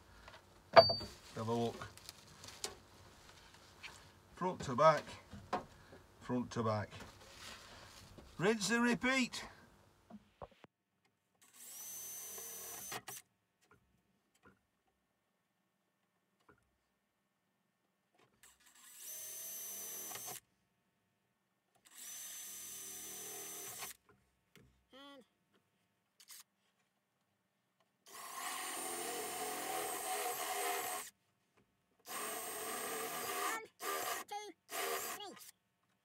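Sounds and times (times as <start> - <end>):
cordless drill boring sheet metal: 28.1 - 31.1, 32.1 - 35.5.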